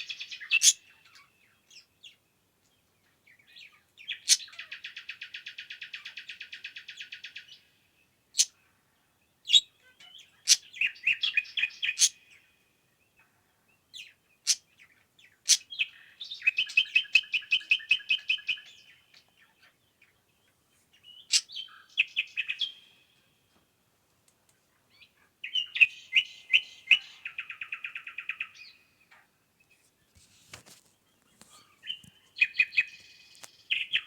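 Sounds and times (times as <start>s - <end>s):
songbird trilling song: 0.0s - 23.4s, 24.7s - 29.9s, 31.1s - 34.0s.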